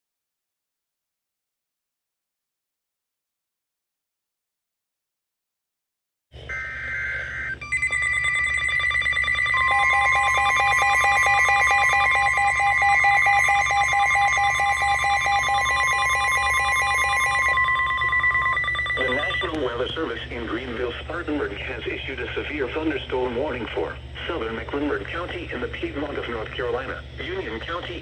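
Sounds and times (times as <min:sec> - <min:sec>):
pulsing two-tone alarm: 0:06.5 - 0:19.6
warbling data burst: 0:06.5 - 0:19.6.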